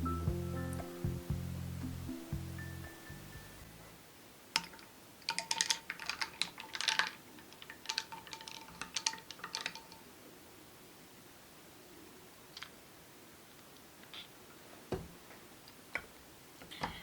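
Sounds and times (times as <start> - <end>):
faint ringing tone: 2.5 - 3.7.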